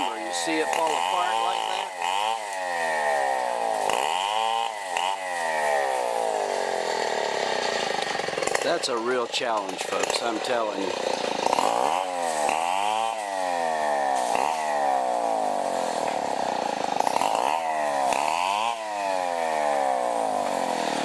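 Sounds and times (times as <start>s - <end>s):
chainsaw cutting wood: 0.0s - 21.0s.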